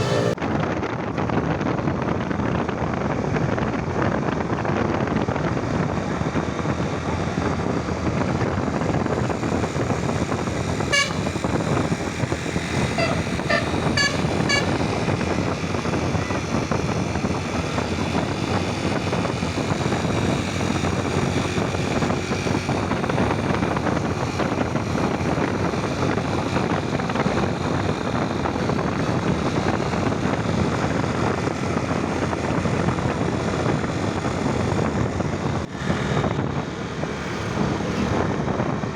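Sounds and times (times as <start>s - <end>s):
bus multi-tone horn: 0.0s - 0.4s, 10.8s - 11.7s, 12.8s - 15.1s
heavy traffic roar: 0.0s - 38.9s.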